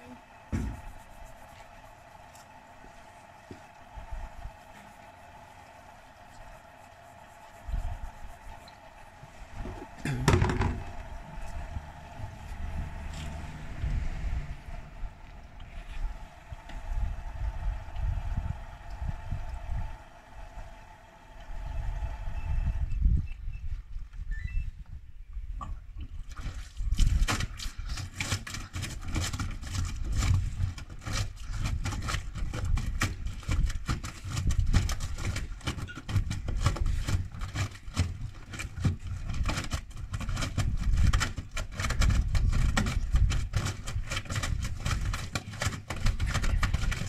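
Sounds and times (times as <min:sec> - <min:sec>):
deep rumble: 0:09.1 - 0:20.6
washing machine drum knocking: 0:09.6 - 0:13.1.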